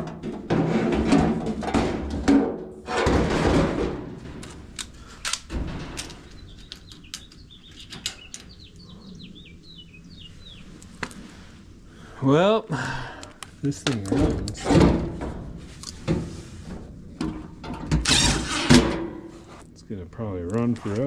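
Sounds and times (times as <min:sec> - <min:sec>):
sharp clicks and knocks: 0:00.0 - 0:08.7
bird chirping falling notes: 0:05.8 - 0:10.9.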